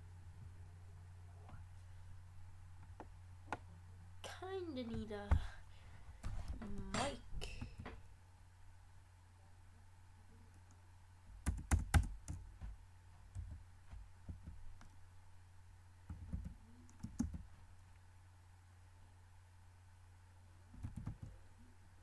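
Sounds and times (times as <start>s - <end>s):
steady low hum: 0.0s - 22.0s
laptop keyboard typing: 11.4s - 12.7s, 13.3s - 13.6s, 16.1s - 17.5s, 20.7s - 21.4s.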